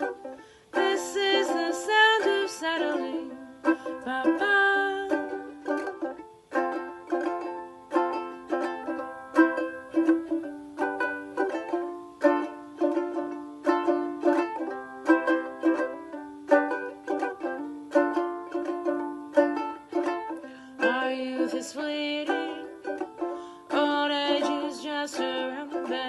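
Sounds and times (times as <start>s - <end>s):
ukulele strumming: 0.0s - 26.0s.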